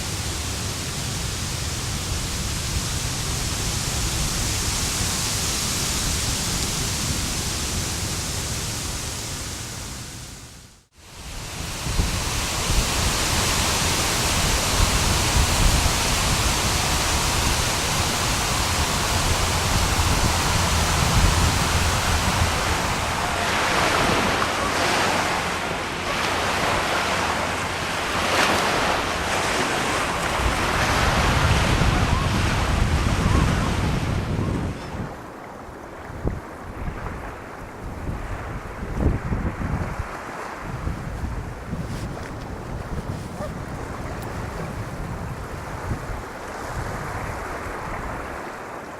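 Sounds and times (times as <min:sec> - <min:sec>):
rushing water: 0:00.0 - 0:48.9
wind buffeting microphone: 0:11.2 - 0:48.9.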